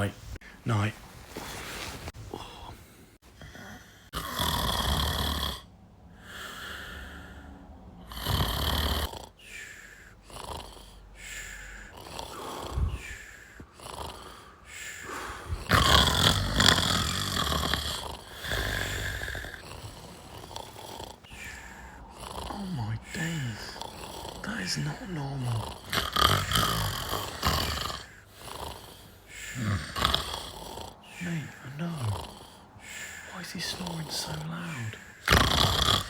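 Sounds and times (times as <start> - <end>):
snorts and breaths: 0.0 - 36.0
man snoring loudly: 3.4 - 36.0.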